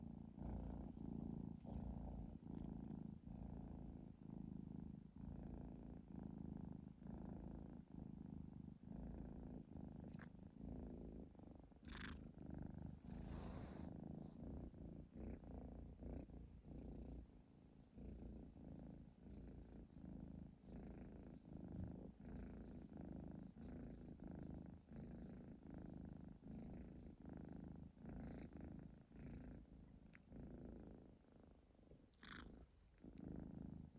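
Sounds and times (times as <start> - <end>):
kitten purring: 0.0 - 33.9.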